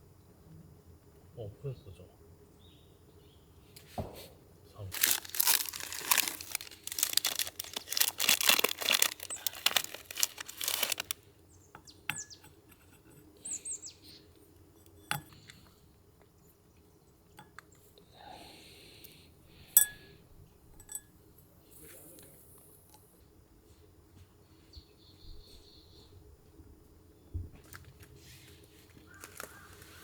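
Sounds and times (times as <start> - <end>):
crinkling and rustling: 4.9 - 11.2, 27.6 - 30.0.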